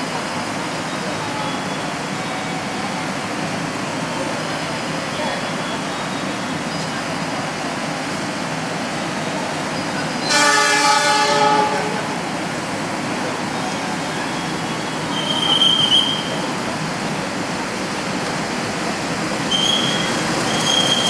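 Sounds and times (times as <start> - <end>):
rumble of station and train noise: 0.0 - 21.0
train horn: 10.2 - 12.2
short high whistle: 14.3 - 16.4.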